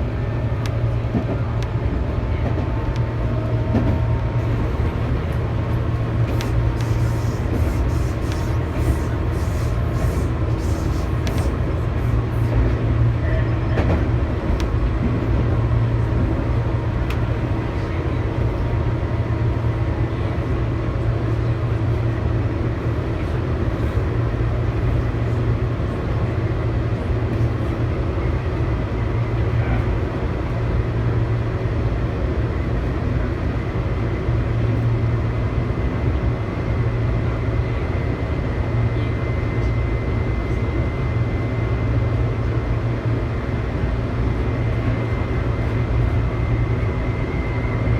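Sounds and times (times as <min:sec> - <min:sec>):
train interior hum: 0:00.0 - 0:47.9
wheel and track noise: 0:03.7 - 0:12.8.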